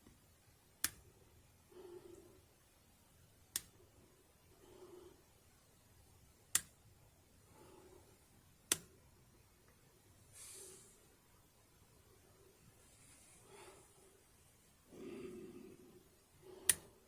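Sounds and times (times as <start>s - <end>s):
soft breathing: 1.6s - 2.6s, 3.8s - 5.8s, 7.4s - 8.4s, 10.2s - 17.0s.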